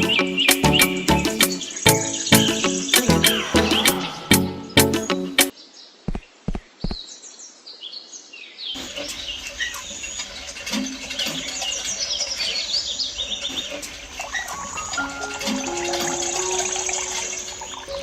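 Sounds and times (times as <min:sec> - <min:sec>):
birds chirping in trilled calls: 0:11.5 - 0:18.0.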